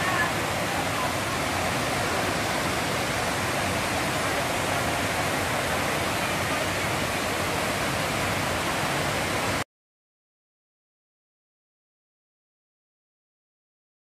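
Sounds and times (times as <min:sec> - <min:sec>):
waterfall rushing: 0:00.0 - 0:09.6.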